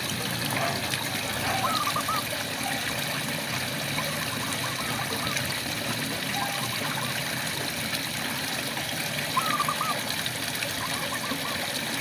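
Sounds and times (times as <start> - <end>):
frogs calling in trills: 1.5 - 2.8, 6.3 - 7.2, 9.3 - 10.0.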